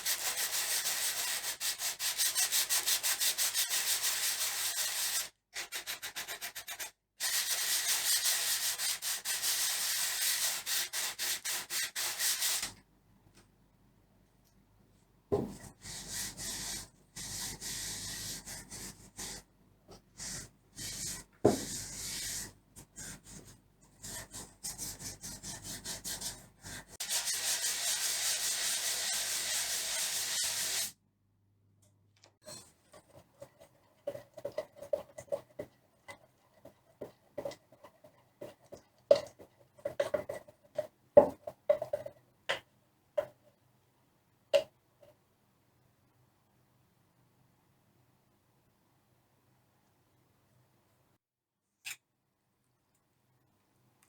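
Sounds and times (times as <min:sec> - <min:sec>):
sandpaper rubbing on wood: 0:24.0 - 0:30.9.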